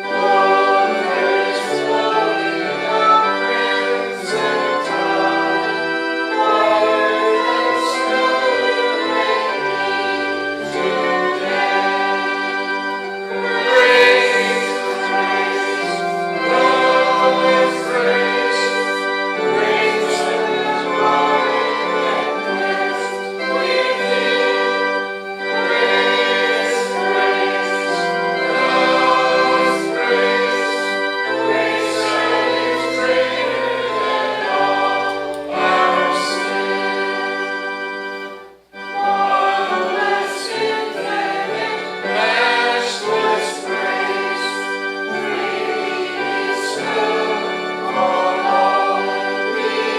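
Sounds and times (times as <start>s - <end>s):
instrumental accompaniment: 0.0s - 49.9s
voices singing a hymn: 0.0s - 49.9s.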